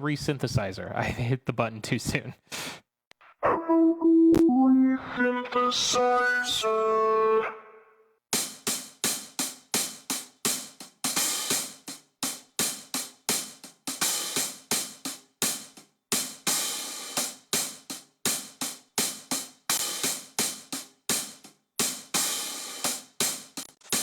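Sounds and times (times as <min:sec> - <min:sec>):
looped hi-hat drum beat: 0:08.4 - 0:24.0.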